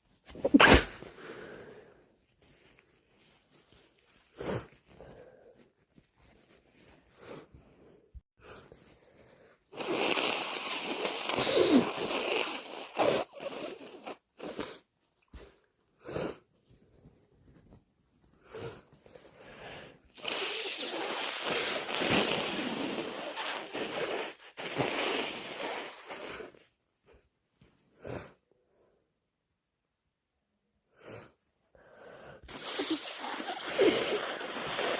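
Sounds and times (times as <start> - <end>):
person blowing nose: 0.3 - 1.8, 4.3 - 5.4, 9.7 - 14.9, 16.0 - 16.4, 19.4 - 26.6, 32.4 - 34.9.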